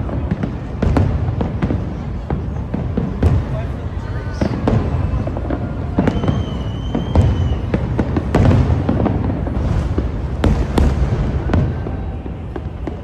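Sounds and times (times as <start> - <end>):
fireworks bangs: 0.0 - 13.0
fireworks rumbling and crackling: 0.0 - 13.0
high steady whistle: 6.0 - 8.0.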